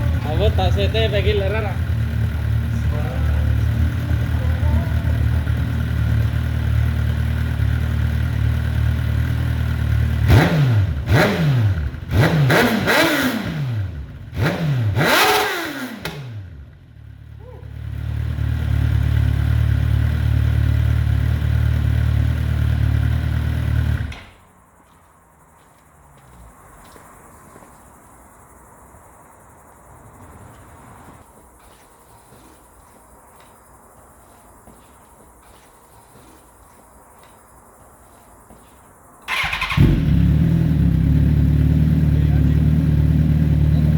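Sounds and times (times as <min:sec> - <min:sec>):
crickets chirping: 0:00.0 - 0:10.3, 0:16.5 - 0:43.9
motorcycle engine revving: 0:00.0 - 0:24.4, 0:39.3 - 0:43.9.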